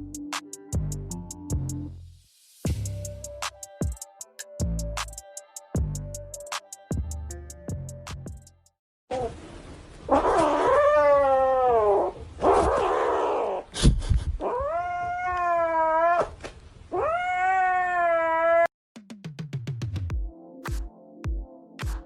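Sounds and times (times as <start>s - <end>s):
cat yowling: 10.1s - 13.7s, 14.4s - 18.7s.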